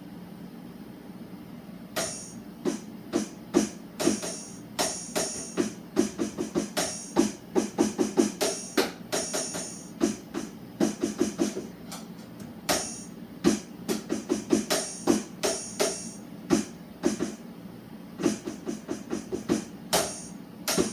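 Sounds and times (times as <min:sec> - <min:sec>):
fast uneven drum beat: 0:02.6 - 0:11.8, 0:12.7 - 0:17.4, 0:18.2 - 0:20.9.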